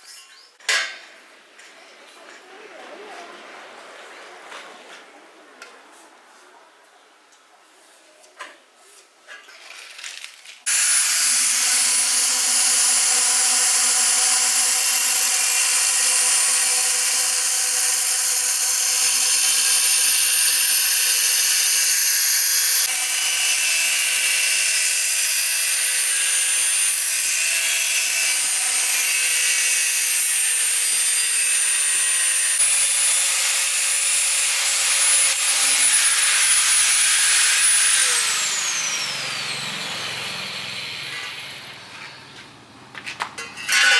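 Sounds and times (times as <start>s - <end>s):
power tool motor whine: 10.7s - 42.2s
loud grinding: 10.7s - 42.5s, 43.6s - 43.9s.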